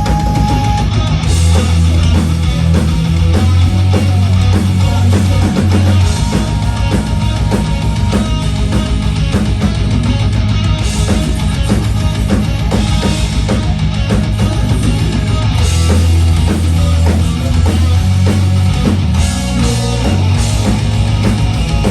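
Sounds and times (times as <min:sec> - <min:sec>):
bass guitar: 0:00.0 - 0:21.9
drum kit beat: 0:00.0 - 0:21.9
electric guitar: 0:00.0 - 0:21.9.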